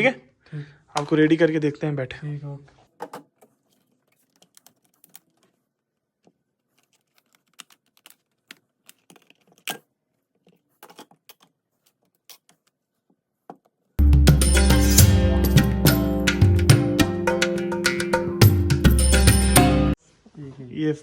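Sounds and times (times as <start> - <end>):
small tools clicking and tapping: 10.4 - 12.8.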